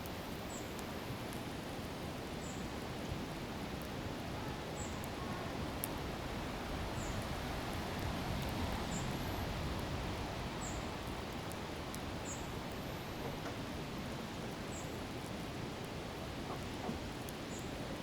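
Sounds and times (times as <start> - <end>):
faint high chirp: 12.3 - 14.1.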